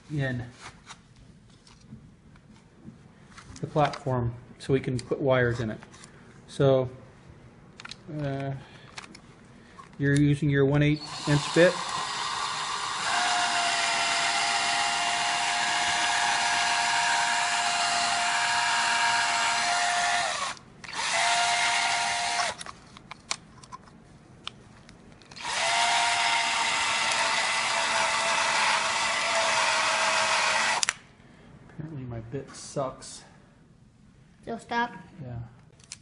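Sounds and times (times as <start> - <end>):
power drill spinning: 10.9 - 22.7, 25.3 - 31.0
drill clicks: 11.0 - 22.8, 25.3 - 31.0.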